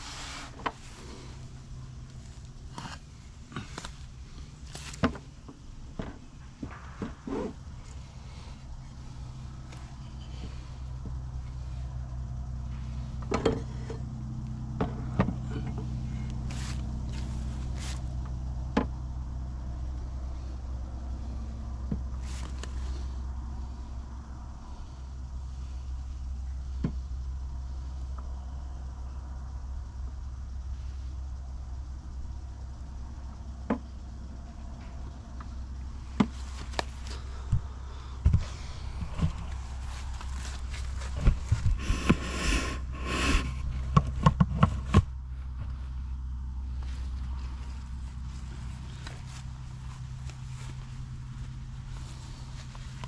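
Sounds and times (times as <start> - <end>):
steady low hum: 0.0 - 53.0
short hissing: 41.8 - 43.6.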